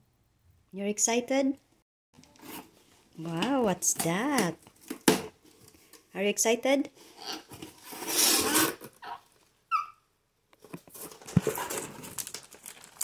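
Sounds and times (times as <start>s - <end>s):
packaging rustling: 10.6s - 13.0s.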